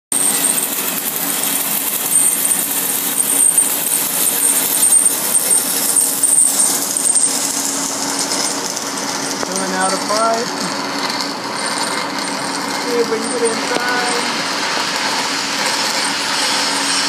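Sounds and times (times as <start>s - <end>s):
welding arc crackling and sizzling: 0.1s - 17.0s.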